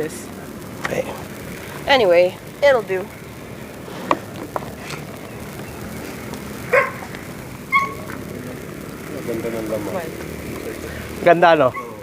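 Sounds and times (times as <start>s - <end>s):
dog barking: 6.7s - 7.1s, 7.7s - 8.1s, 11.7s - 12.0s.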